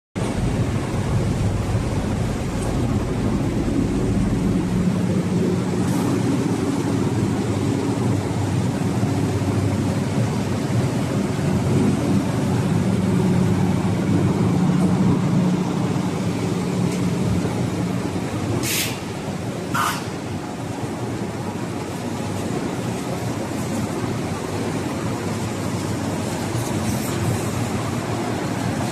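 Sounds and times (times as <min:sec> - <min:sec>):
low hum: 0:00.2 - 0:18.6
machinery droning: 0:00.2 - 0:28.9.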